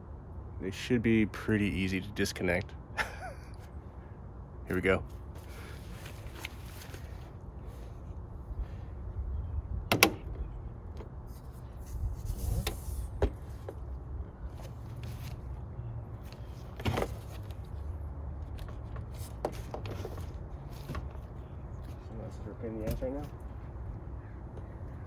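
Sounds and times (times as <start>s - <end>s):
steady low rumble: 0.0s - 16.6s
rustling: 5.1s - 8.0s.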